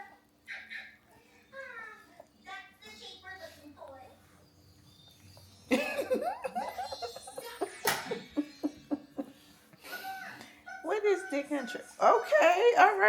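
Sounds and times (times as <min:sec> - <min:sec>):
hearty laughter: 0:05.7 - 0:10.4.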